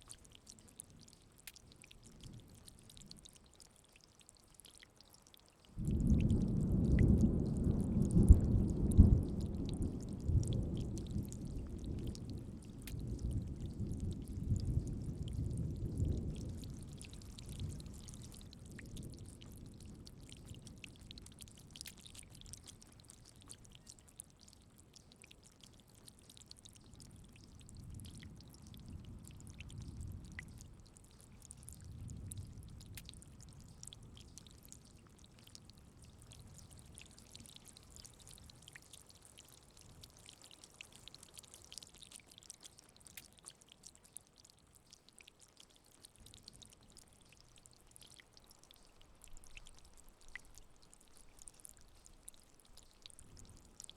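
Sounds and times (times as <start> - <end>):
rain falling: 0.0 - 53.9
rolling thunder: 5.8 - 16.9.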